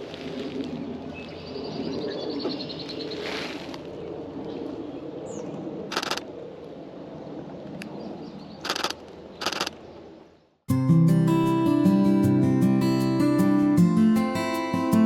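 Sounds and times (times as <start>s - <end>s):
camera shutter bursts: 5.9s - 6.2s, 8.6s - 9.8s.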